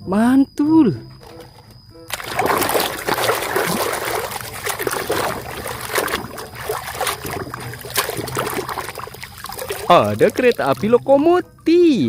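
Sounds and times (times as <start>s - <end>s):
water splashing over toy vehicle: 2.1s - 11.3s.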